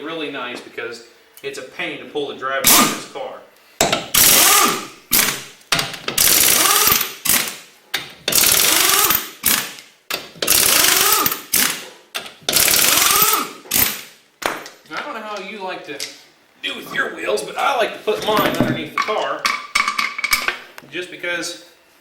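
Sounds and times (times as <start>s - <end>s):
impact wrench hammering: 3.8s - 14.8s.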